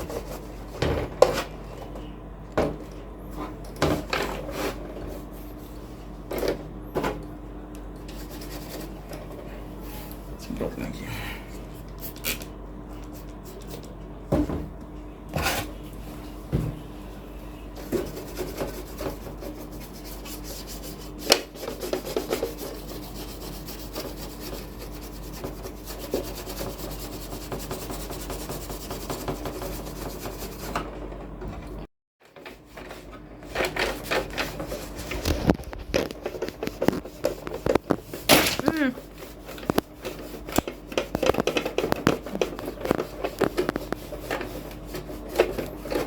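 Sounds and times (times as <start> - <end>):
rubbing and scraping on plastic casing: 17.8 - 30.9, 32.4 - 46.0.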